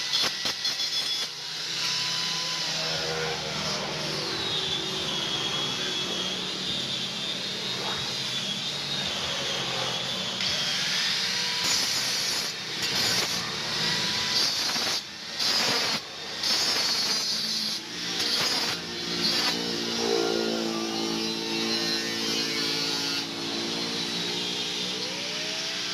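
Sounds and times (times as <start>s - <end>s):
metal grinding hiss: 0.0s - 25.6s
thin whine: 0.0s - 25.9s.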